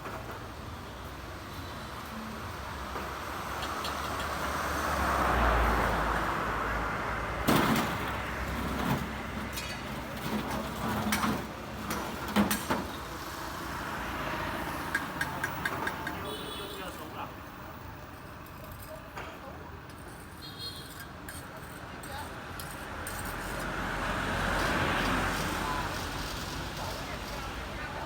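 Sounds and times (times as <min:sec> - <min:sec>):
vehicle rumbling past: 0:03.4 - 0:10.4, 0:23.4 - 0:27.6.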